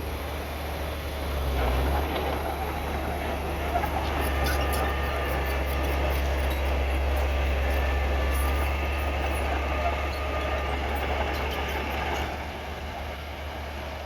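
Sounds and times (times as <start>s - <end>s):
bulldozer diesel engine running: 0.0s - 14.0s.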